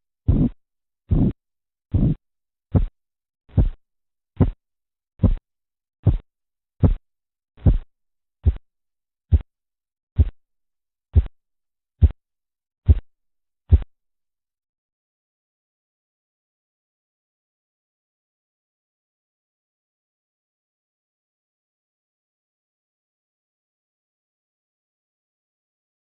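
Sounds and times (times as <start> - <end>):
pulse thuds through stethoscope: 0.3 - 3.8, 4.4 - 4.6, 5.2 - 5.4, 6.0 - 7.0, 7.6 - 8.6, 9.3 - 9.5, 10.2 - 10.4, 11.1 - 11.4, 12.0 - 12.2, 12.9 - 13.1, 13.7 - 13.9.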